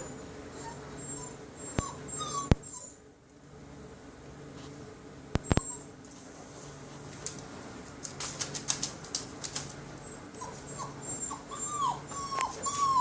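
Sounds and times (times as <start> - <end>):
puppy whimpering: 0.0 - 3.0, 5.4 - 5.9, 10.0 - 13.0.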